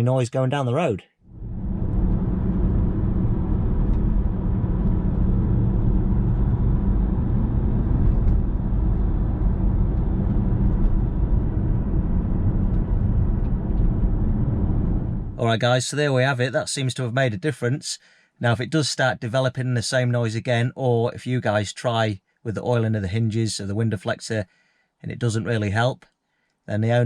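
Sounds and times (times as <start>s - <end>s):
road and engine rumble in car cabin: 1.3s - 15.6s.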